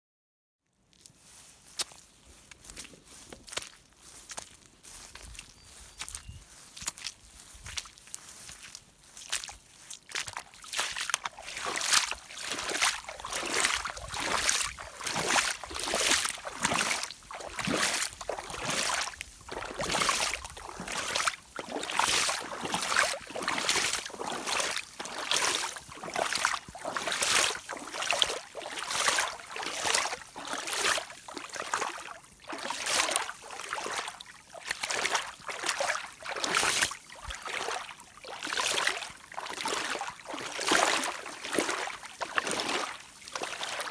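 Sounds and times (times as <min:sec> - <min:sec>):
rain boots splashing through water: 0:01.2 - 0:43.9.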